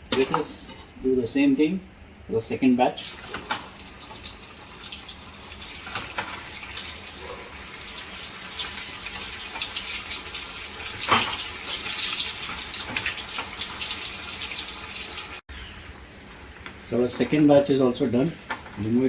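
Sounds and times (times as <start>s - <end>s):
deep frying sizzle: 3.0s - 19.0s
oil crackles and pops: 7.8s - 15.4s, 18.3s - 19.0s.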